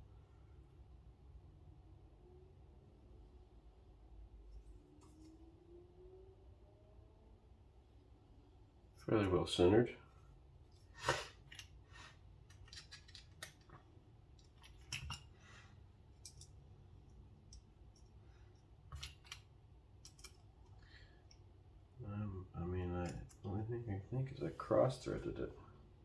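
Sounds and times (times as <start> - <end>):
small metal clicks and taps: 16.2 - 21.4.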